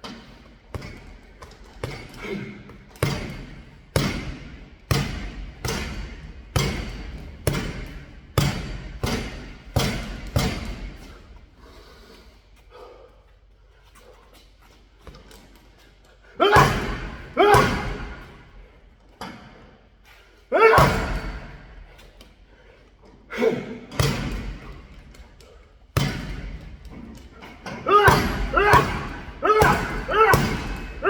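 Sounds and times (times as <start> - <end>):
punches thudding: 3.0 - 11.1, 16.4 - 18.5, 20.6 - 21.8, 23.9 - 25.0, 26.0 - 31.0.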